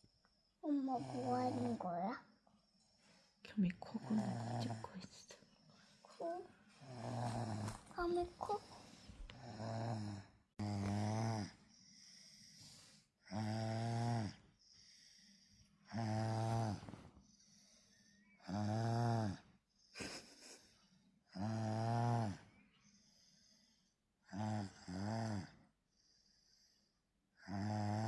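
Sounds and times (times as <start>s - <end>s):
child snoring: 0.6s - 2.3s, 4.0s - 5.0s, 6.1s - 20.3s, 21.3s - 22.6s, 23.8s - 28.0s.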